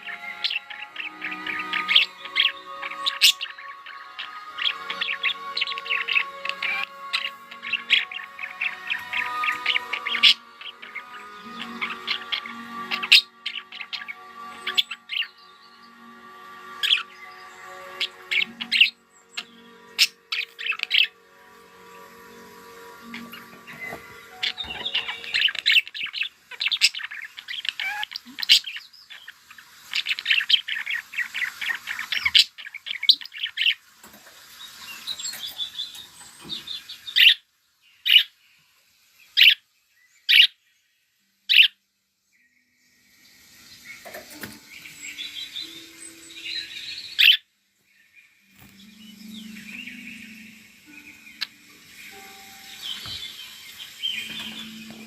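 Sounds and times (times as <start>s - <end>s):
budgerigars chattering: 0.0s - 15.4s, 16.7s - 21.2s, 23.0s - 33.8s, 36.4s - 37.4s, 38.1s - 38.3s, 40.3s - 40.5s, 41.5s - 41.7s, 44.1s - 47.4s, 52.7s - 55.0s.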